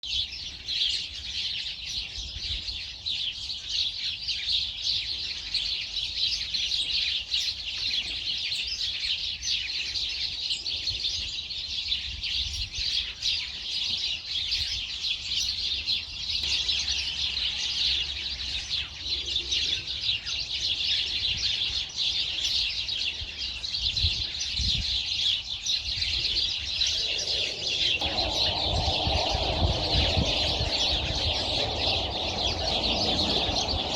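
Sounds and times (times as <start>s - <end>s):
small birds chirping: 0.0s - 33.9s
low rumble: 26.2s - 33.9s.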